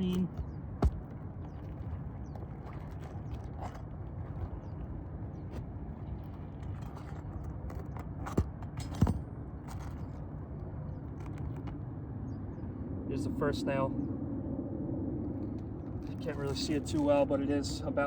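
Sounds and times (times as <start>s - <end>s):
steady low rumble: 8.6s - 18.0s.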